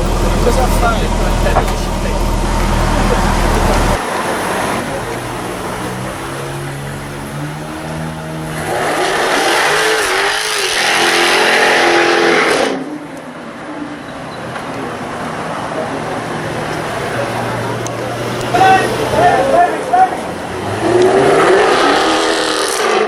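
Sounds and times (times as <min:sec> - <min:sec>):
car engine revving: 0:00.0 - 0:13.2, 0:14.7 - 0:23.0
low engine sound: 0:00.0 - 0:13.2, 0:14.6 - 0:23.0.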